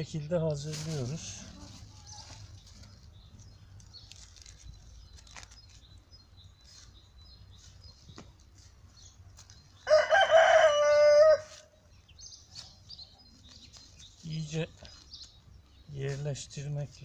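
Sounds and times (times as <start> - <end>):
rooster crowing: 9.8 - 11.6.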